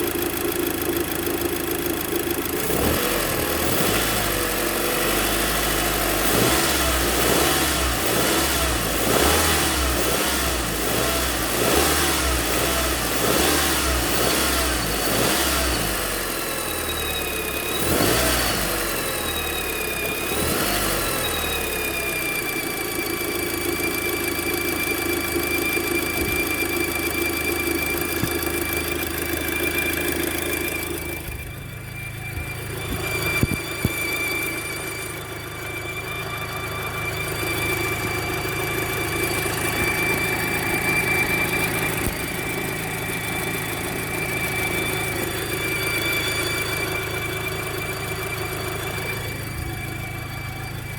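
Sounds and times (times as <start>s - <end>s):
car engine running: 0.0s - 50.9s
high-pitched whine: 14.4s - 50.9s.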